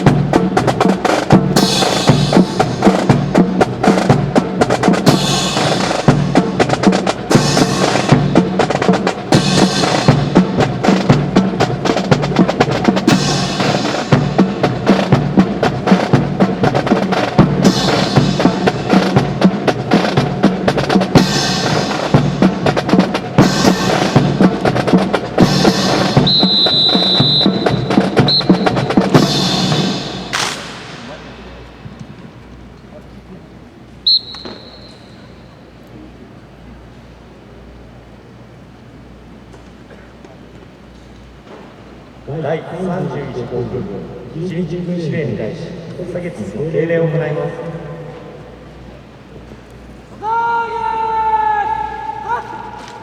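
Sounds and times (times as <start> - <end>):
snare and bass drums: 0.0 - 33.0
high whistle-like tone: 26.2 - 29.0, 34.0 - 35.6.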